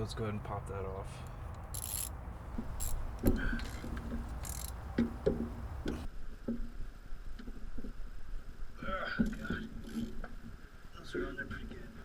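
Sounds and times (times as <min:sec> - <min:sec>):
ratchet clicking: 0:01.5 - 0:06.0
metallic knocks: 0:01.7 - 0:06.1.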